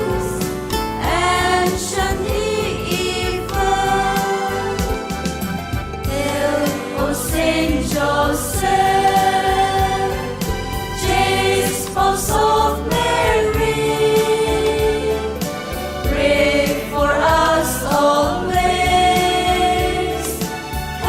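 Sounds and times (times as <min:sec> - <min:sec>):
choir singing a hymn: 0:00.0 - 0:21.0
rhythmic instrumental accompaniment: 0:00.0 - 0:21.0.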